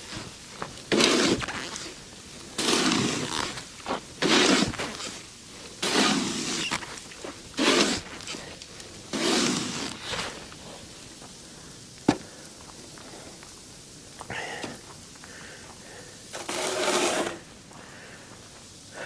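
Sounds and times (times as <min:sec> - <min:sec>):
snow shovel scraping snow: 0:00.0 - 0:10.9, 0:16.3 - 0:17.6.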